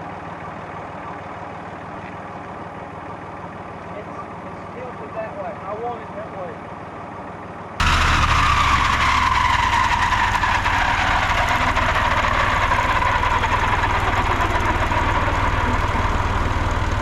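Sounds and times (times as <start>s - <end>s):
tractor engine running: 0.0s - 17.0s
high mechanical whine: 7.8s - 17.0s.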